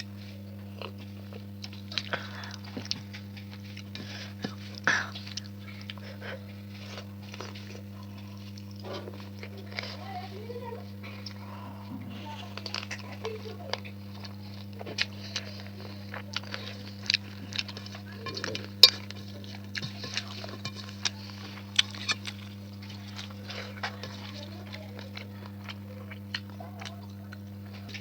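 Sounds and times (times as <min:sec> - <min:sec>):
steady low hum: 0:00.0 - 0:28.0.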